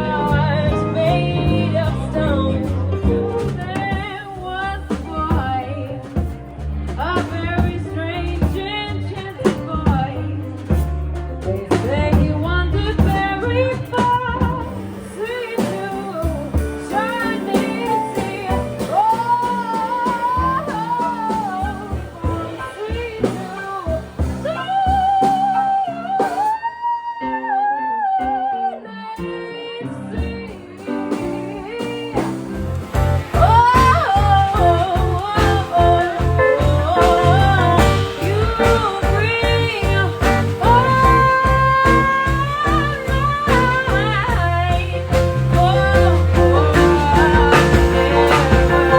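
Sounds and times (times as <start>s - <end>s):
bass line: 0.0s - 26.4s, 31.1s - 48.9s
guitar: 0.0s - 48.9s
person singing: 11.6s - 48.9s.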